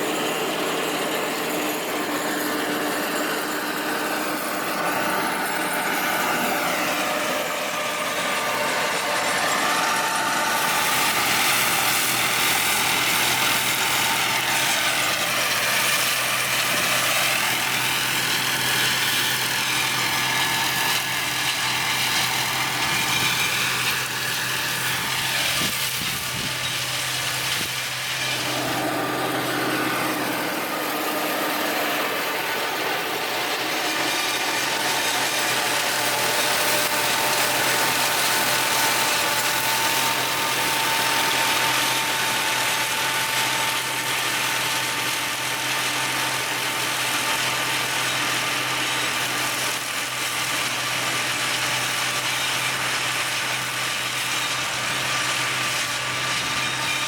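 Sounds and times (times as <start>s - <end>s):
tractor flail mower running: 0.0s - 57.0s.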